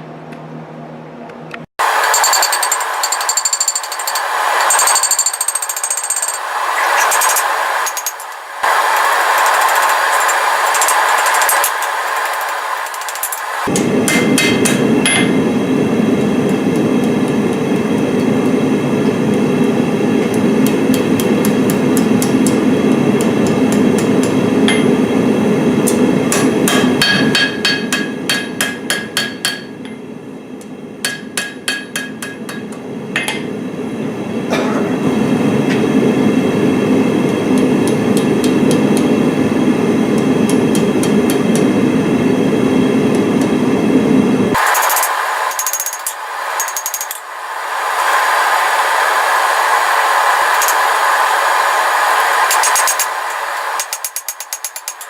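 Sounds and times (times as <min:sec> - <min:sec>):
hammer blows on anvil: 0:13.2 - 0:15.5, 0:26.3 - 0:29.8.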